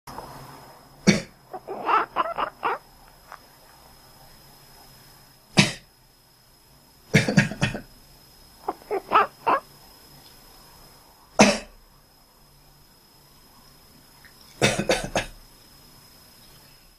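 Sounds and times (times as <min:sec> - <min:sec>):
person coughing: 0:05.6 - 0:05.8, 0:07.2 - 0:07.8, 0:11.4 - 0:11.7, 0:14.6 - 0:15.4.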